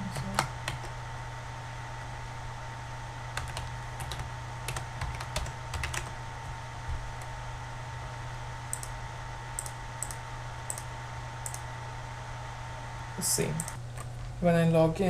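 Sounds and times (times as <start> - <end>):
steady low hum: 0.0 - 15.0
typing on computer keyboard: 3.4 - 6.1.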